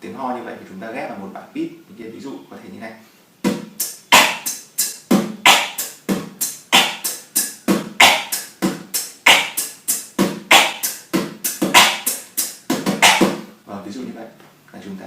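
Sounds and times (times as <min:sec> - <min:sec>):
beatboxing: 0:03.4 - 0:13.5
cough snare: 0:13.0 - 0:13.3.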